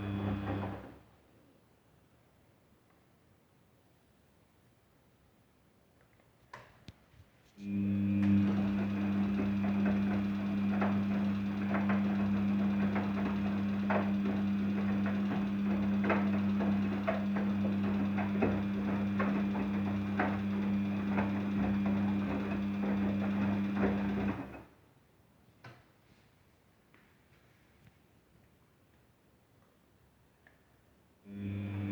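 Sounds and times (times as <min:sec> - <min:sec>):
washing machine humming and rattling: 0:00.0 - 0:01.0, 0:07.7 - 0:24.7, 0:31.3 - 0:31.9.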